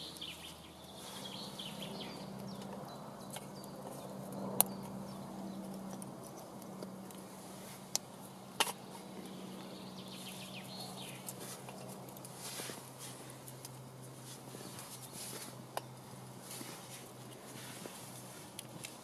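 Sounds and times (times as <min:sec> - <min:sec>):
birds chirping faintly: 0:00.0 - 0:19.0
wood fire burning: 0:00.1 - 0:19.0
sharp pops from burning sticks: 0:07.9 - 0:09.0, 0:11.1 - 0:17.8.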